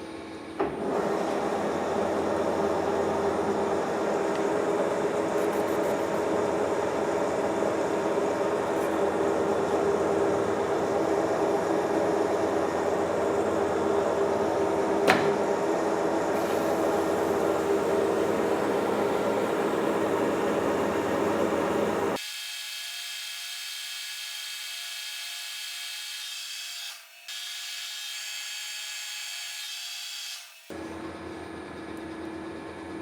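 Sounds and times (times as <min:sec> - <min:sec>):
metal lathe running: 0:00.0 - 0:22.2.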